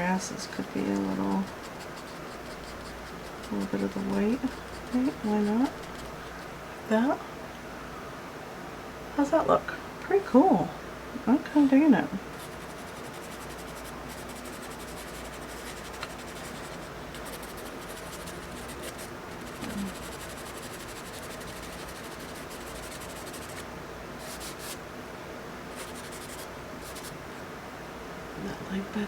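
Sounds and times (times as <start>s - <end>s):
steady background hiss: 0.0s - 29.0s
drawing tool scratching on paper: 0.5s - 6.4s, 12.4s - 23.6s, 24.2s - 24.8s, 25.8s - 27.1s.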